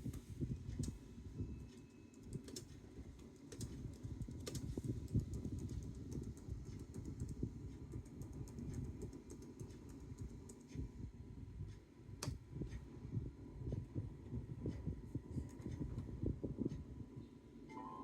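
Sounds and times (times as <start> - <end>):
keyboard typing clicks: 1.6 - 10.7.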